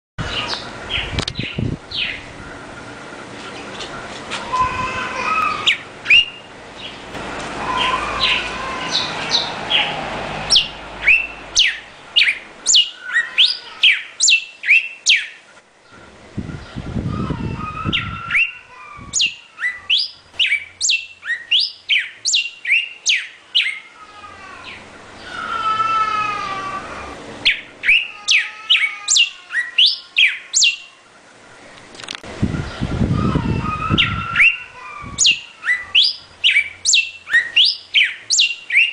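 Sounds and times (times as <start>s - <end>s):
bird whistling song: 5.5s - 7.0s, 10.5s - 15.4s, 17.6s - 23.8s, 27.4s - 30.8s, 33.6s - 38.9s
brief low rumble: 7.0s - 11.6s.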